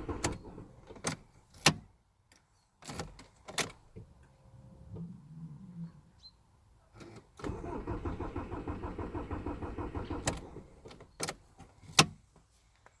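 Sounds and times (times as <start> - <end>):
car starter cranking engine: 0.0 - 0.9, 7.4 - 11.0.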